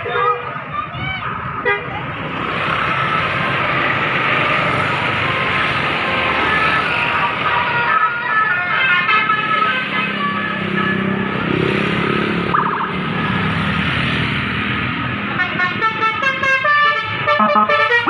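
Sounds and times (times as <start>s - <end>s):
multi-tone bus horn notes: 0.0s - 0.6s, 1.6s - 2.0s, 8.9s - 11.3s, 15.4s - 18.0s
large vehicle engine passing: 10.5s - 15.3s.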